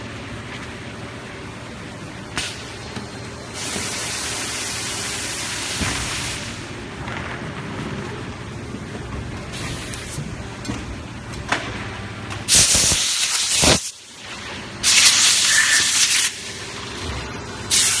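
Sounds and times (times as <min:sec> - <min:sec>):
hissing air bursts: 0:03.6 - 0:06.7, 0:12.5 - 0:13.9, 0:14.8 - 0:16.5, 0:17.7 - 0:18.0.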